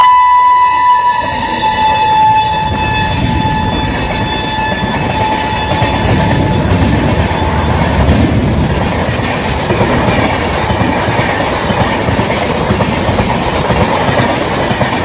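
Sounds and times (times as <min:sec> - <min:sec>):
long shrill train horn: 0:00.0 - 0:08.0
wheels clattering on rails: 0:00.7 - 0:15.0.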